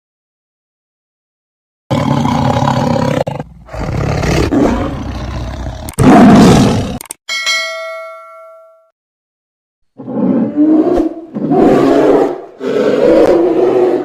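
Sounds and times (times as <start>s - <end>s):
wild animal roaring: 1.9s - 7.0s, 10.0s - 14.0s
bell-like chime: 7.3s - 9.0s.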